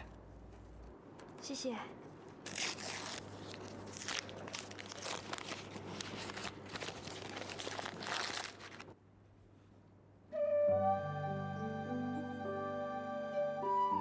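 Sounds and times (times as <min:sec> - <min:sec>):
wrapping paper crinkling and tearing: 0:02.2 - 0:09.0.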